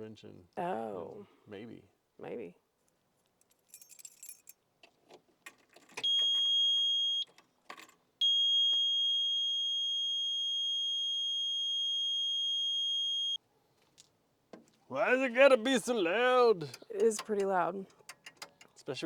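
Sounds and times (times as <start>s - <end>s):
faint clicks and rattles: 3.2s - 6.4s, 16.6s - 19.0s
high warning beep: 6.0s - 7.2s, 8.2s - 13.4s.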